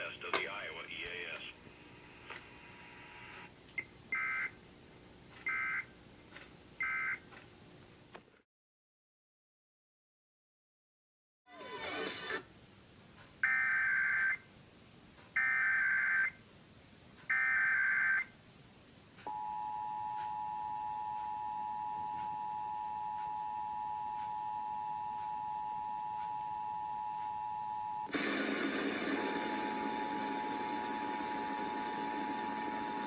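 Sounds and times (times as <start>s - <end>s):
steady dual attention tone: 19.3s - 33.0s
loud noisy sound: 28.1s - 31.7s.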